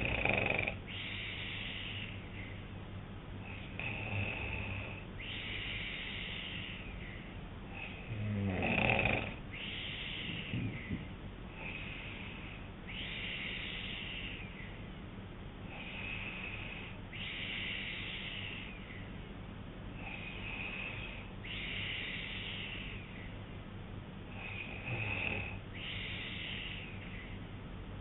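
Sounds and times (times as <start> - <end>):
man snoring: 0.0 - 1.7, 3.4 - 5.0, 7.7 - 10.8, 24.3 - 25.6
steady low hum: 0.0 - 28.0.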